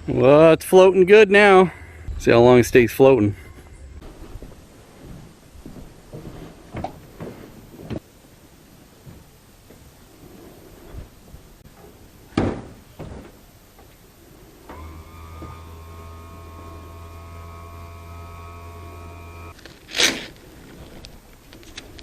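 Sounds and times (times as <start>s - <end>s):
electric motor humming and whining: 14.7s - 19.6s.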